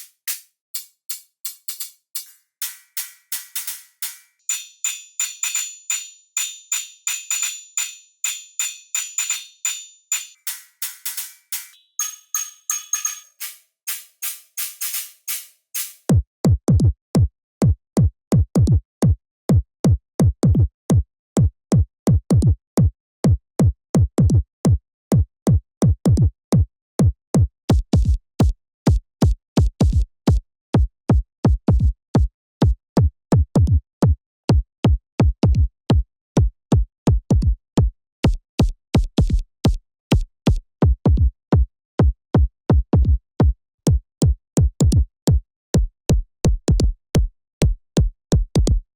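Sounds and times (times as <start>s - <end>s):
synthesized kick drum: 16.1s - 48.9s.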